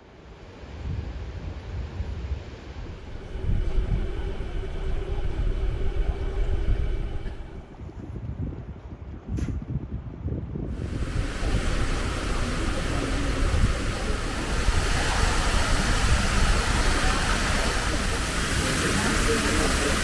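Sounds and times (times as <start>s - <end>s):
steady hiss: 2.8s - 7.9s, 10.8s - 20.0s
water noise from moving boat: 2.8s - 8.0s, 10.7s - 20.0s
wind rush: 2.8s - 8.0s, 10.7s - 20.0s
wind buffeting microphone: 2.8s - 8.1s, 10.7s - 20.0s.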